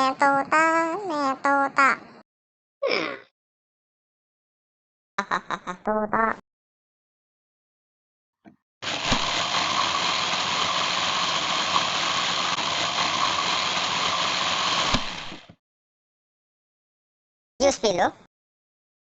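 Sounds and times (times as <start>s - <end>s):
machine whirring: 8.8s - 15.6s.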